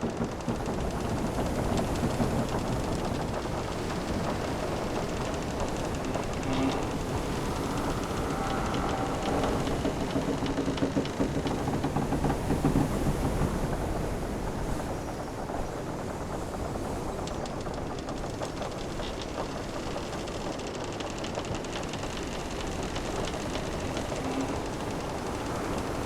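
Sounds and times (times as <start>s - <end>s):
ocean waves washing: 0.0s - 26.0s
ship timbers creaking: 0.0s - 26.0s
low groan: 5.8s - 11.2s.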